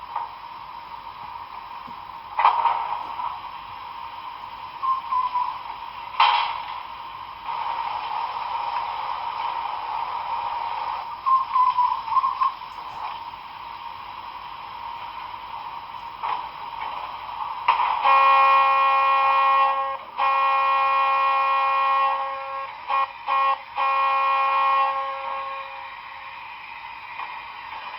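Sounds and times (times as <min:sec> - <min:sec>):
steam hiss through small speaker: 0:00.0 - 0:27.9
steam whistle blasts: 0:18.0 - 0:26.1.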